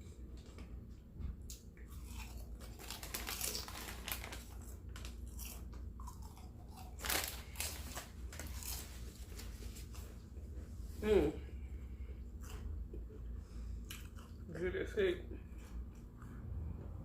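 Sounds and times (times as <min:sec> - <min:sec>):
person chewing crunchy food: 0:01.5 - 0:10.7, 0:12.0 - 0:14.6, 0:15.4 - 0:16.8.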